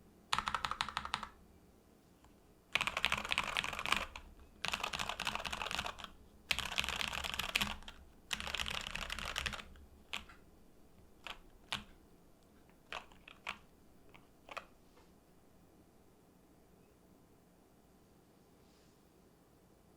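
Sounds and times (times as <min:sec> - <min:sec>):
mechanical keyboard typing: 0:00.3 - 0:01.4, 0:02.7 - 0:10.4, 0:11.2 - 0:12.0, 0:12.8 - 0:14.7.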